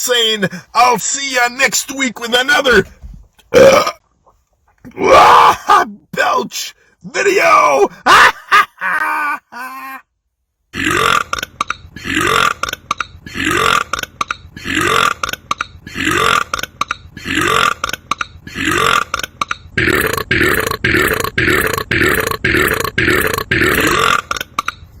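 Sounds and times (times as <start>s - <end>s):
man burping loudly: 3.5s - 4.1s, 10.7s - 24.9s.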